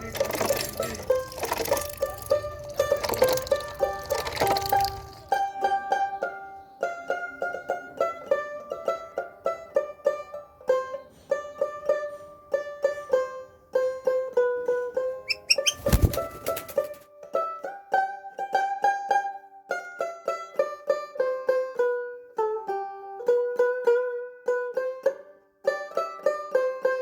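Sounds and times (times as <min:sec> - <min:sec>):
plucked string melody: 0:00.0 - 0:27.0.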